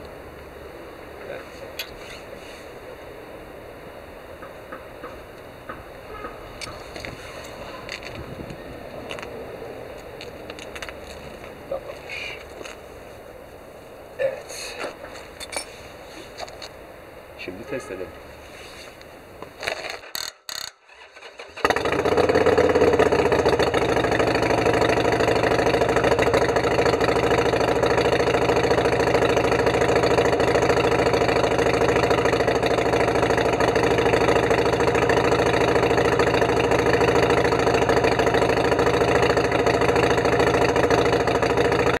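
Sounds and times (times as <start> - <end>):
starter clicks: 19.6 - 21.4
motorcycle engine idling: 20.2 - 42.0.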